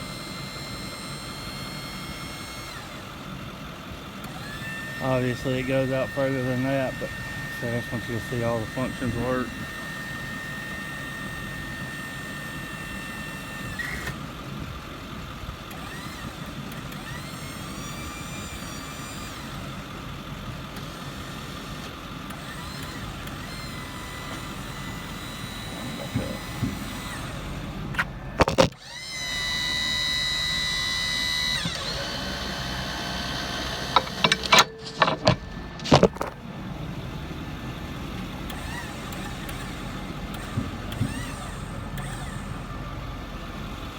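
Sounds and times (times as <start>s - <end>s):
crane motor whine: 0.0s - 43.9s
metal clanks: 33.8s - 36.4s.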